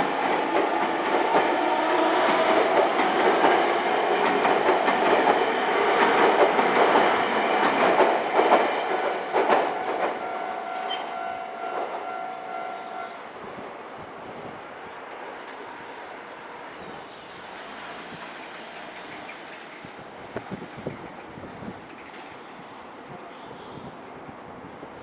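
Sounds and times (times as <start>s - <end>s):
train wheels clacking over rail joints: 0.0s - 10.2s.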